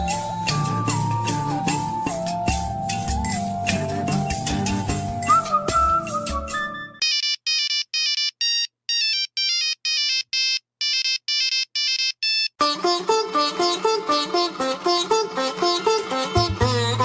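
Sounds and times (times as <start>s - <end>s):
mobile phone ringtone beeping melody: 4.6s - 12.6s.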